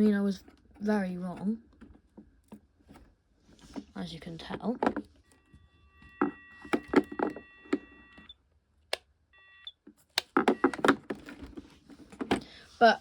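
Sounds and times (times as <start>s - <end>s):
payphone electronic beep: 5.4s - 8.4s, 9.4s - 9.8s, 10.4s - 10.9s
clicks and knocks of phone handling: 6.1s - 8.3s, 9.9s - 12.4s.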